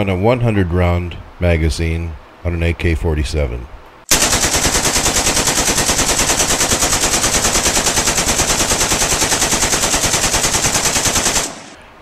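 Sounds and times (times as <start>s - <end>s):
automatic rifle fire: 4.1s - 11.8s.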